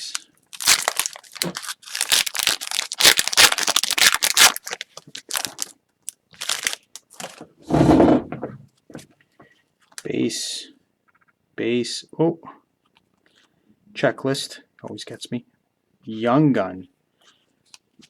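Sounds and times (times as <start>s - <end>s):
wrapper crinkling and tearing: 0.0s - 7.4s.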